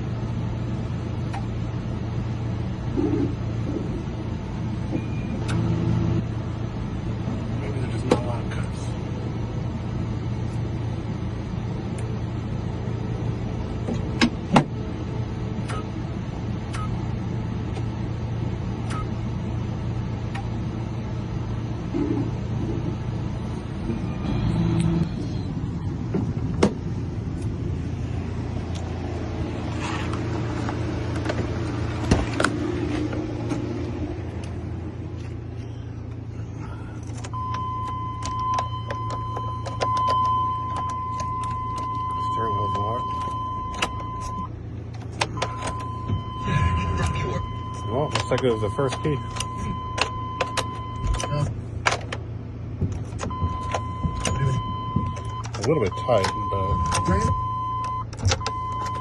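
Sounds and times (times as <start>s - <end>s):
low mechanical hum: 0.0s - 59.0s
high beep: 4.9s - 5.4s, 37.4s - 44.5s, 45.4s - 51.5s, 53.3s - 59.0s.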